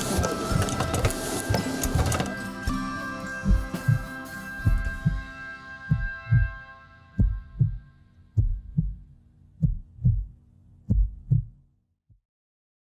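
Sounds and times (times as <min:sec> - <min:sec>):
ringing chord: 0:00.0 - 0:08.2
paired low thumps: 0:03.4 - 0:05.3, 0:05.9 - 0:06.6, 0:07.2 - 0:11.6.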